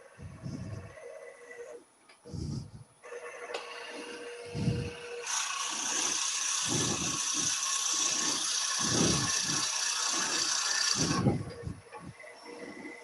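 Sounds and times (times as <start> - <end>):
drill bit cutting wood hiss: 3.9 - 13.0.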